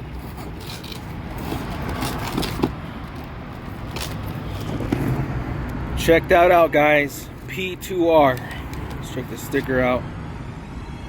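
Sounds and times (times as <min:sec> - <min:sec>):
packaging rustling and crinkling: 0:00.1 - 0:04.4.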